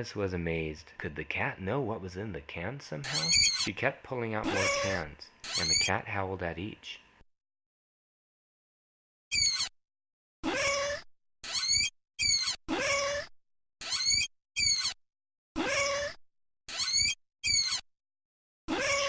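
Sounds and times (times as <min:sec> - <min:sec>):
cat yowling: 0:04.5 - 0:05.9, 0:10.4 - 0:13.3, 0:15.6 - 0:16.2, 0:18.7 - 0:19.0.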